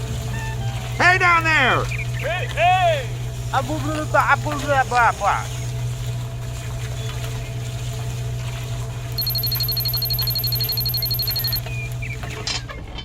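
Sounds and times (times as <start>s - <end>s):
rapid high-pitched electronic beeping: 9.2s - 11.6s
steady low hum: 9.2s - 11.6s.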